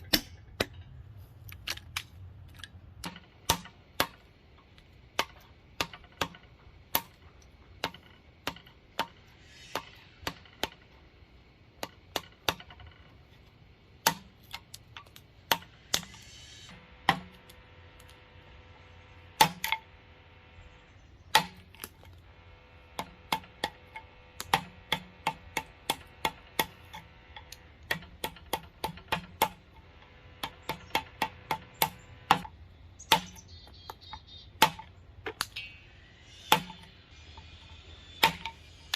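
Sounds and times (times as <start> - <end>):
chisel striking wood: 19.4 - 19.8, 21.3 - 22.0, 23.0 - 29.6, 30.4 - 33.9, 36.5 - 36.9.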